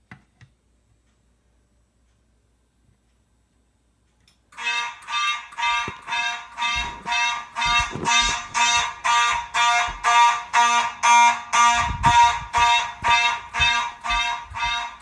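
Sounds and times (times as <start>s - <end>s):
fire alarm buzzing pulses: 4.5s - 15.0s
low knocks: 6.7s - 10.1s.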